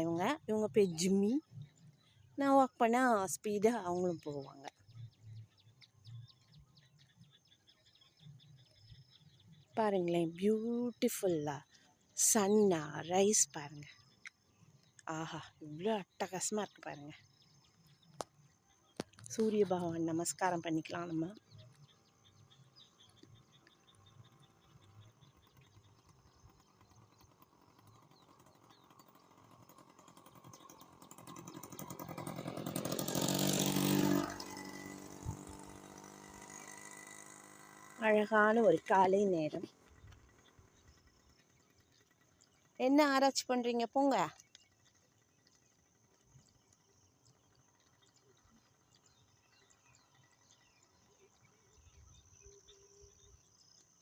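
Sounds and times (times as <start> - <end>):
bird chirps: 0.0 - 32.9
vehicle engine passing by: 30.8 - 38.0.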